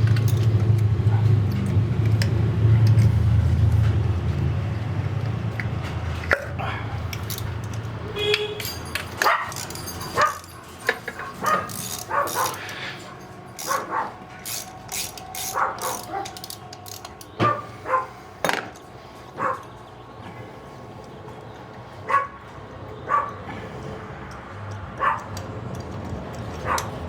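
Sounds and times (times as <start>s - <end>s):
dog barking: 9.2s - 9.6s, 10.2s - 12.6s, 13.7s - 14.2s, 15.5s - 16.4s, 17.4s - 18.2s, 19.4s - 19.7s, 22.1s - 22.4s, 23.1s - 23.4s, 25.0s - 25.3s.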